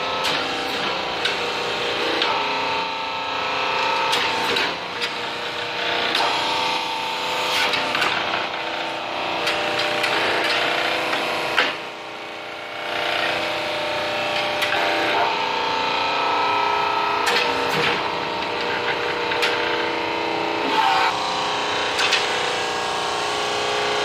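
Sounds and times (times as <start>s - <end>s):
hydraulic press motor whine: 0.0s - 24.0s
sharp clicks and knocks: 17.2s - 19.9s, 21.9s - 22.4s.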